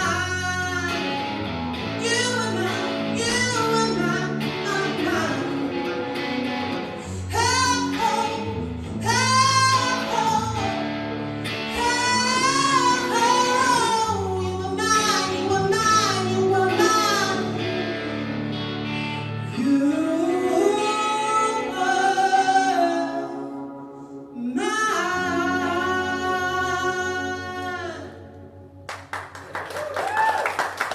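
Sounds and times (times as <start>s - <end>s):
woman singing: 0.0s - 1.2s, 2.0s - 6.0s, 7.2s - 10.9s, 11.6s - 18.0s, 19.4s - 28.4s
guitar accompaniment: 0.0s - 30.9s.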